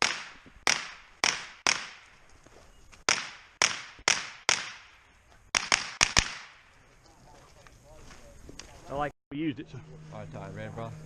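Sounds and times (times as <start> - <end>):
rifle gunshots: 0.0 - 2.1, 3.1 - 6.7.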